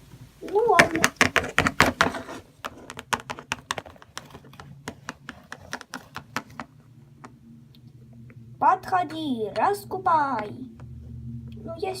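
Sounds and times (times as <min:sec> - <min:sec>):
toy figurines tapping on hard surface: 0:00.8 - 0:06.7.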